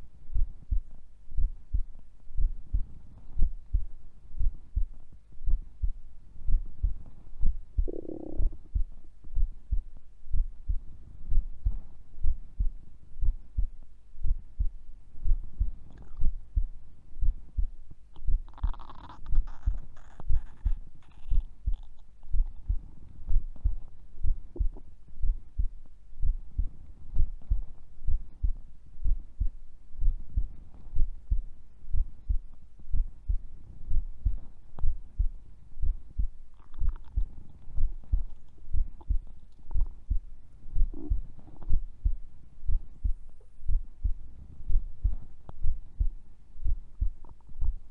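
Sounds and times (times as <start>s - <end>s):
heartbeat thumps: 0.0s - 47.9s
stomach gurgles: 7.8s - 8.9s, 18.2s - 22.7s, 36.5s - 40.1s, 40.7s - 41.9s.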